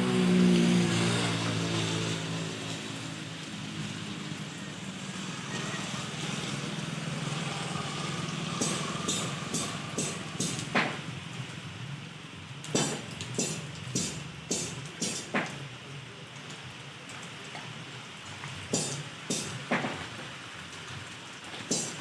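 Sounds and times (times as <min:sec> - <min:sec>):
noisy hiss: 0:05.1 - 0:16.3, 0:18.6 - 0:20.6, 0:21.4 - 0:22.0.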